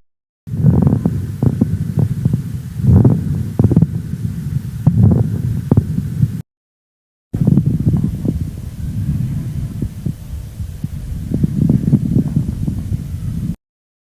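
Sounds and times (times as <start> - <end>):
heartbeat thumps: 4.8 - 6.4, 7.4 - 13.2.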